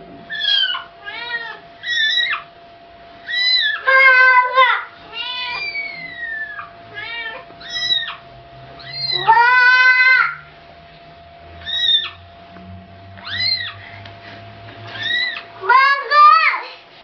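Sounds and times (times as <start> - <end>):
cat meowing: 0.3 - 2.4, 3.3 - 8.2, 8.8 - 10.4, 11.6 - 12.2, 13.2 - 13.8, 14.9 - 15.9.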